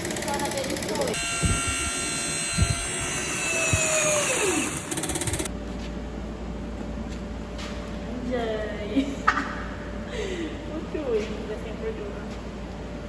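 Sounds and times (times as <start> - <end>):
compactor machine whine: 0.0 - 5.6.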